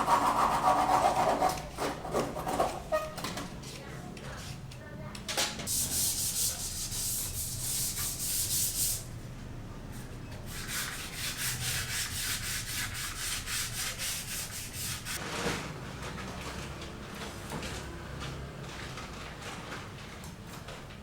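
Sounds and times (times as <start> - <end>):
scraping on a hard surface: 10.8 - 15.7.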